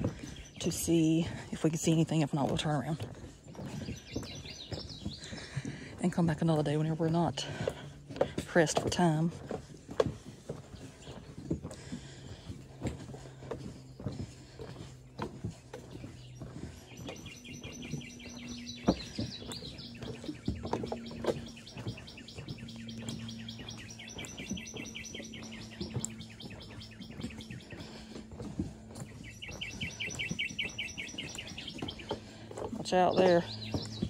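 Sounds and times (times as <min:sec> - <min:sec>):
footsteps: 0:00.0 - 0:34.0
animal high pulsing trill: 0:16.2 - 0:34.0.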